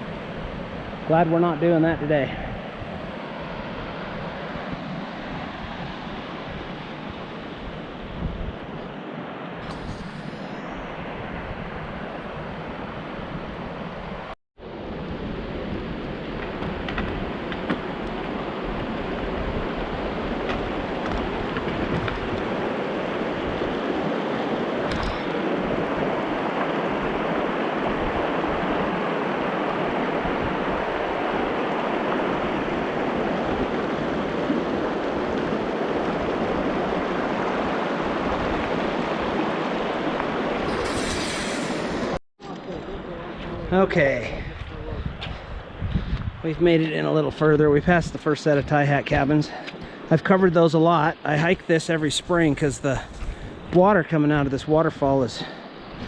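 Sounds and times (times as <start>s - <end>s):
river rushing: 0.0s - 42.2s.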